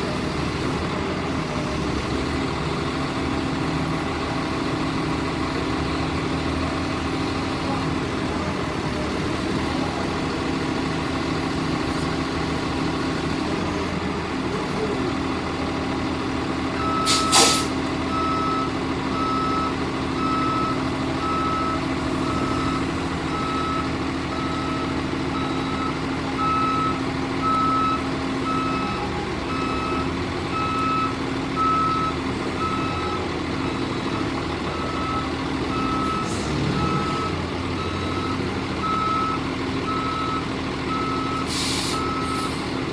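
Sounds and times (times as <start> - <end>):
diesel engine running: 0.0 - 42.9
sharp hiss of air: 17.1 - 17.8, 41.5 - 42.6.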